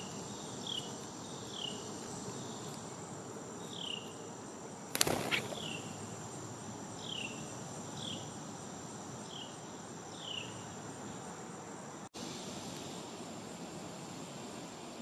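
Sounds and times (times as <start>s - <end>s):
insects trilling: 0.0s - 15.0s
bird whistling falling notes: 5.0s - 5.8s.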